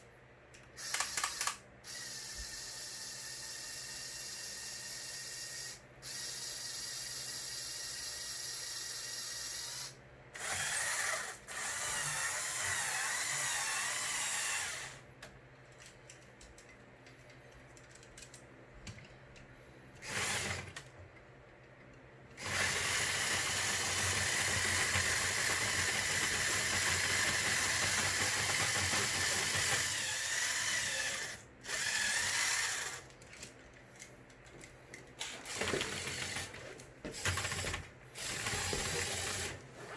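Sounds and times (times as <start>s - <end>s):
small electric motors whirring: 0.8s - 15.0s, 20.0s - 20.8s, 22.4s - 33.1s.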